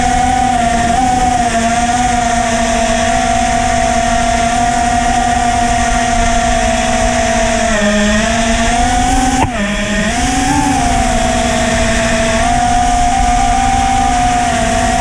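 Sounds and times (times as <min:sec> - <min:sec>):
drone motors whining: 0:00.0 - 0:15.0
wind noise: 0:00.0 - 0:15.0.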